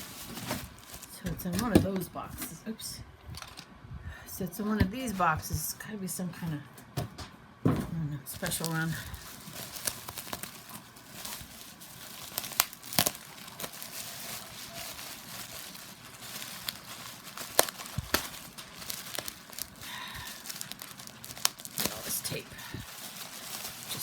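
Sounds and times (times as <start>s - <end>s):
packaging crinkling: 0.0s - 1.9s, 8.3s - 24.0s.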